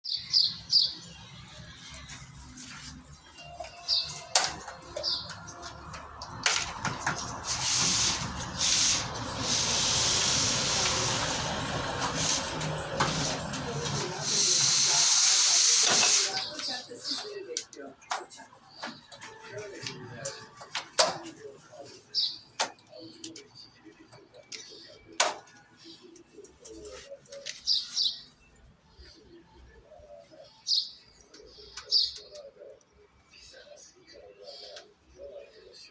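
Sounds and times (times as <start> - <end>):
small birds chirping: 0.0 - 2.4, 3.2 - 6.4, 21.4 - 35.9
loud hissing: 7.2 - 16.6.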